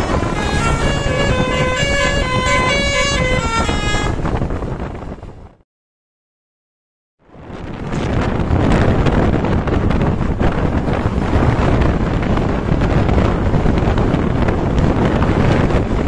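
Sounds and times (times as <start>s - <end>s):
passing road traffic: 0.0s - 5.4s
wind buffeting microphone: 0.0s - 5.6s, 7.3s - 16.0s.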